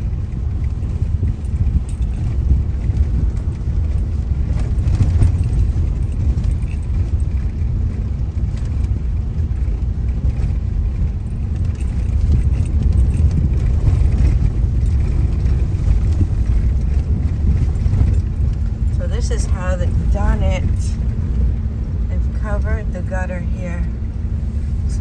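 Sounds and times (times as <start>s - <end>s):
car driving slowly on road: 0.0s - 25.0s.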